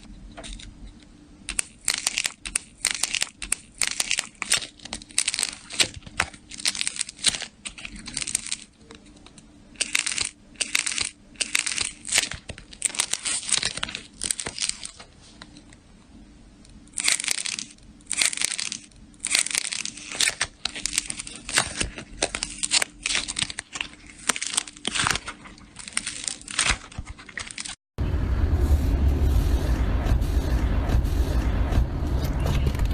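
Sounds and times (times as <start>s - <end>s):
slime crackling and popping: 1.5s - 8.7s, 9.8s - 15.0s, 16.9s - 27.8s.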